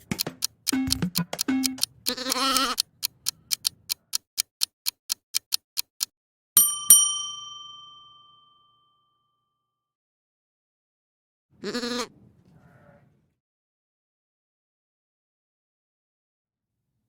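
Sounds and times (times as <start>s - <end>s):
clock ticking: 0.0s - 6.1s
bell ringing: 6.6s - 8.9s.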